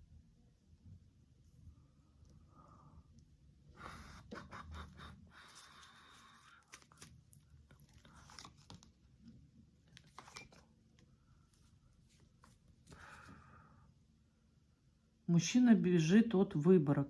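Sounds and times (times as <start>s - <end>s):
faint clicks and rustles: 5.4s - 13.4s.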